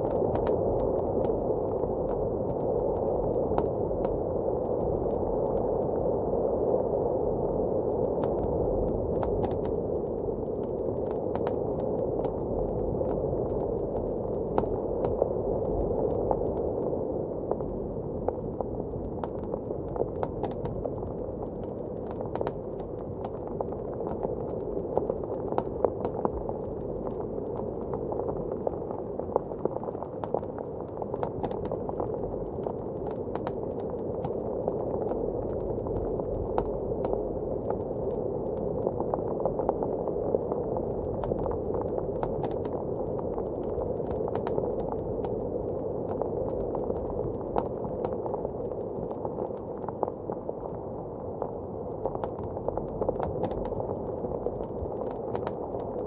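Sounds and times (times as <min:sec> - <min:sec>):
muffled blizzard wind: 0:00.0 - 0:56.0.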